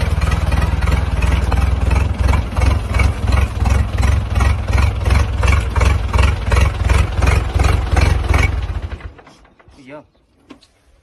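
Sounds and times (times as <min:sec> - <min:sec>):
old engine low rumble: 0:00.0 - 0:11.0.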